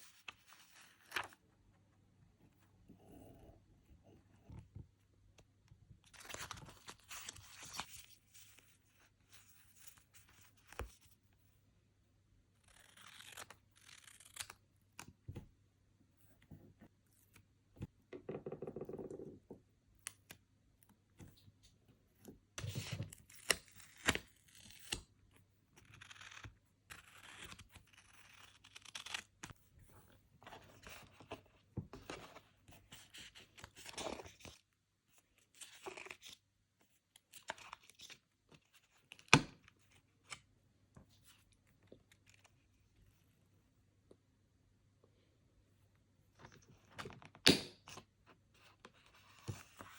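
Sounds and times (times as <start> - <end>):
paper rustling: 0.1 - 1.4.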